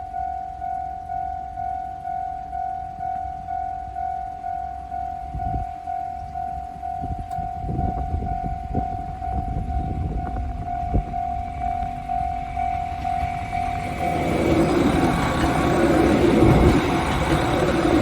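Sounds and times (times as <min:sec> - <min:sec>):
level crossing warning bell: 0:00.0 - 0:18.0
low rumble: 0:07.7 - 0:18.0.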